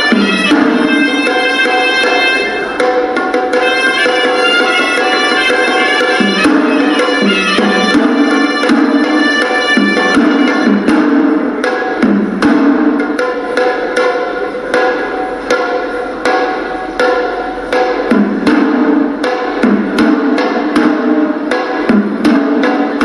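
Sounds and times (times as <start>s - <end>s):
reedy pipe melody: 0.0s - 10.9s
drums in quick rhythm: 0.0s - 23.0s.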